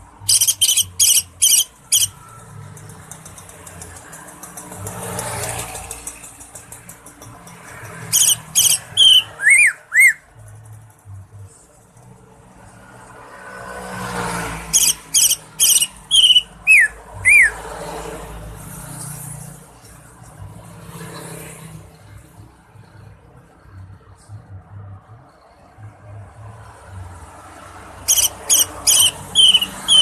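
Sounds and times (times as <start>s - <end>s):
bird singing high notes and whistles: 0.2s - 2.2s, 8.2s - 10.2s, 14.8s - 17.6s, 28.1s - 30.0s.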